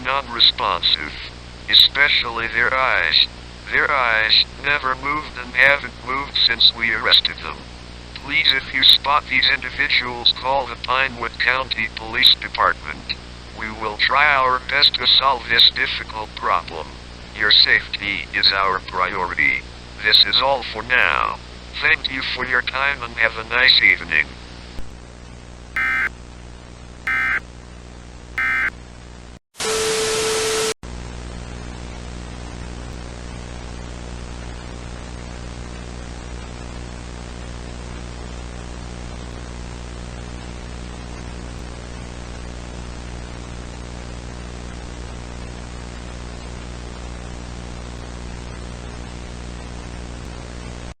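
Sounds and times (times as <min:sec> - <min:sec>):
digital data tone bursts: 0:25.8 - 0:26.1, 0:27.1 - 0:27.4, 0:28.4 - 0:28.7
static with steady tone: 0:25.8 - 0:26.1, 0:27.1 - 0:27.4, 0:28.4 - 0:28.7.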